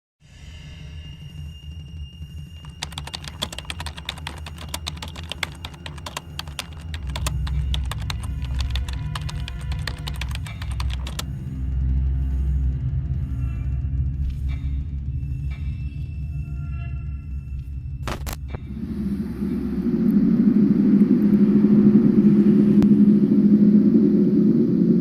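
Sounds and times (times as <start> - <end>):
keyboard typing clicks: 2.6 - 11.5.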